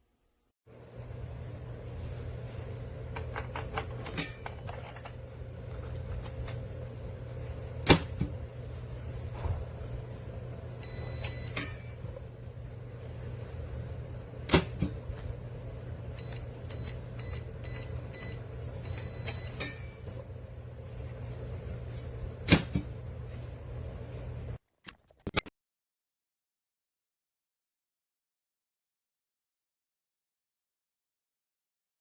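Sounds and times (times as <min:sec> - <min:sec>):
steady low hum: 0:00.7 - 0:24.6
keypad beeps: 0:10.8 - 0:11.8, 0:16.2 - 0:19.6.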